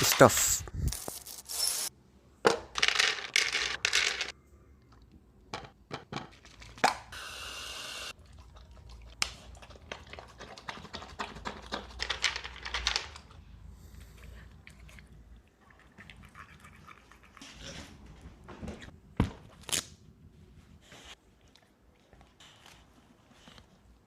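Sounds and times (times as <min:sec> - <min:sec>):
dog eating: 0:08.2 - 0:18.2.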